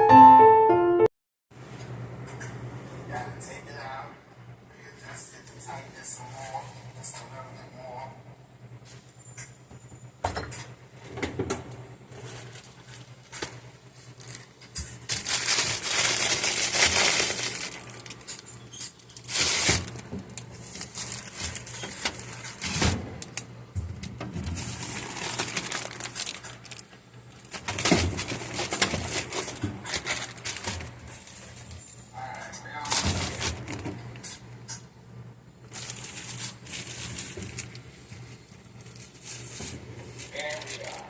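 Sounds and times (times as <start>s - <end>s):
plastic packaging crinkling: 12.2s - 23.5s, 24.4s - 32.1s, 32.7s - 34.0s, 35.7s - 41.0s.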